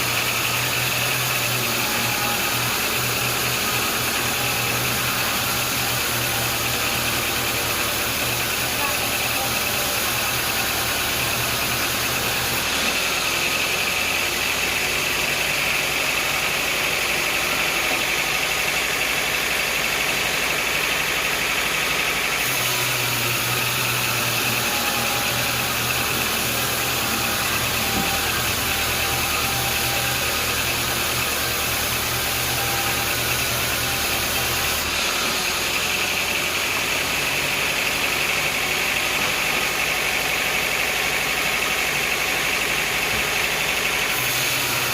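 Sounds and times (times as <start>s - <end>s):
sawmill machinery drone: 0.0s - 44.9s
high machine whine: 22.3s - 37.8s.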